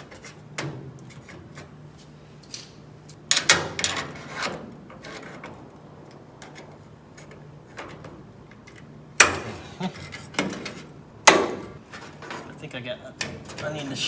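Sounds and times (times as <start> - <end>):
steady low hum: 0.0 - 14.0
sheet metal knocks and scrapes: 9.2 - 12.6, 13.2 - 14.0.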